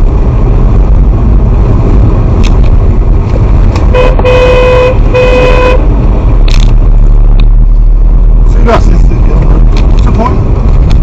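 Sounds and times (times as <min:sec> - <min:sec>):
car road and engine rumble: 0:00.0 - 0:11.0
car horn blasts: 0:03.9 - 0:05.9.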